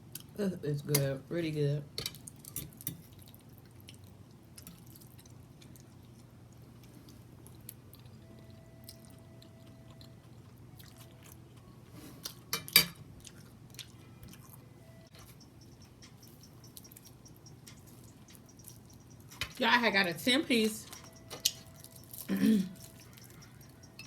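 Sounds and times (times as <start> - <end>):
person chewing food: 2.1 - 19.6, 20.9 - 24.0.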